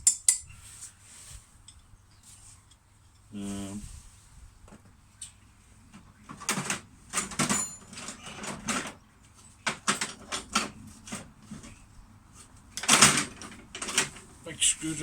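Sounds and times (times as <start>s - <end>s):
metal tools clinking and scraping: 6.6s - 11.8s.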